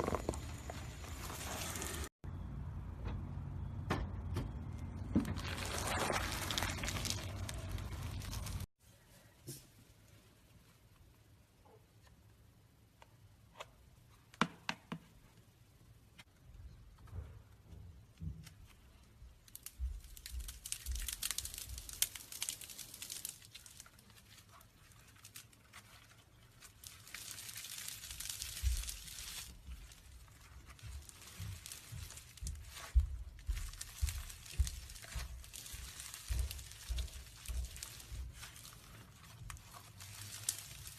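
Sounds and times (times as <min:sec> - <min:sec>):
crumbly material crackling when crushed: 0:00.0 - 0:02.2, 0:05.2 - 0:08.7, 0:19.4 - 0:40.9.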